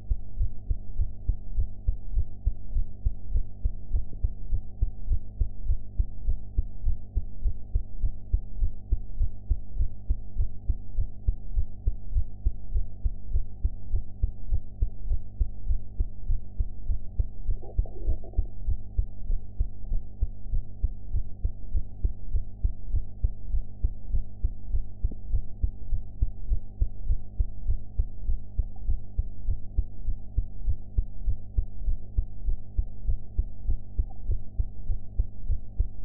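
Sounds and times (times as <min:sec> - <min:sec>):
constant low hum: 0:00.0 - 0:36.0
heartbeat thumps: 0:00.0 - 0:36.0.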